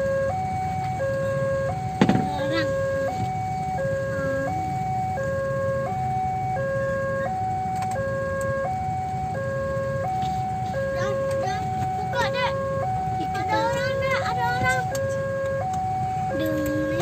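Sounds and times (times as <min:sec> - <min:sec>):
toy train electronic siren: 0:00.0 - 0:17.0.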